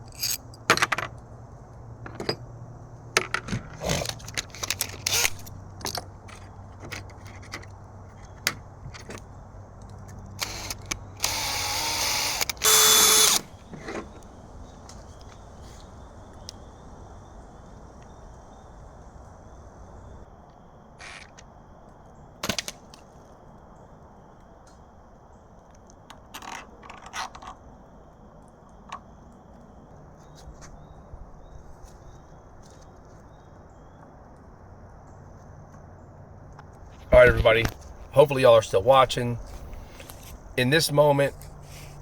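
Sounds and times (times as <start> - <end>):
small motor whining: 10.4 - 13.5.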